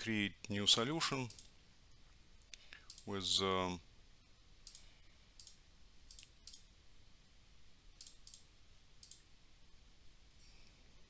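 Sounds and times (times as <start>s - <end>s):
computer mouse clicks: 2.4s - 3.1s, 4.6s - 6.7s, 8.0s - 9.3s.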